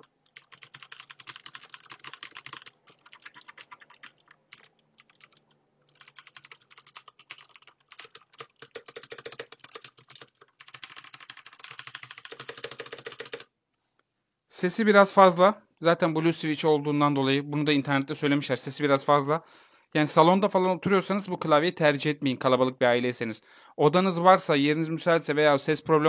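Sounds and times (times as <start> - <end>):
clicky mechanical keyboard typing: 0.0 - 13.5.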